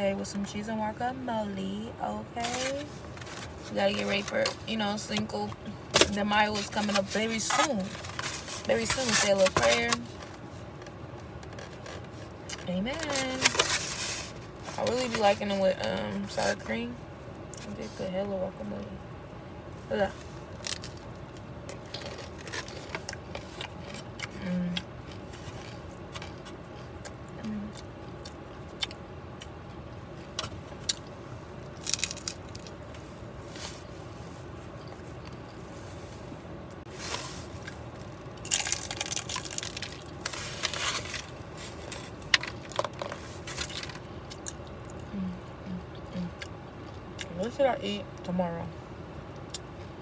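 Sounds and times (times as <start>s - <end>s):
crunchy chewing and biting: 20.5s - 29.6s, 30.2s - 32.8s, 37.4s - 45.1s.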